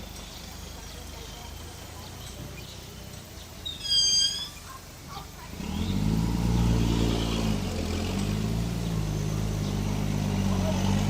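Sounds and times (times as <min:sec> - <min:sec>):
vehicle engine running: 0:00.0 - 0:11.0
short high-pitched squeal: 0:03.7 - 0:04.7.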